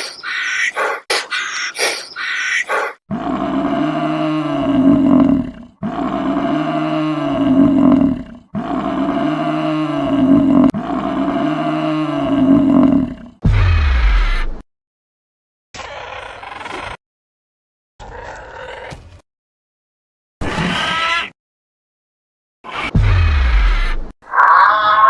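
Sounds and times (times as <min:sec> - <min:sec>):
large animal low call: 0:00.0 - 0:13.4.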